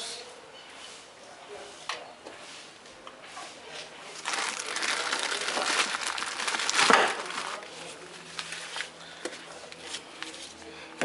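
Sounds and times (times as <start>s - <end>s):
paper wrapping crinkling and tearing: 4.2s - 9.0s.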